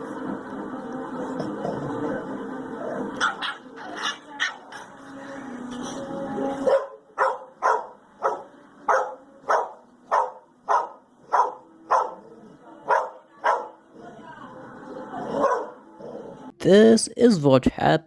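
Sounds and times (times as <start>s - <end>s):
dog barking: 3.2s - 4.7s, 6.6s - 13.8s, 15.4s - 15.8s.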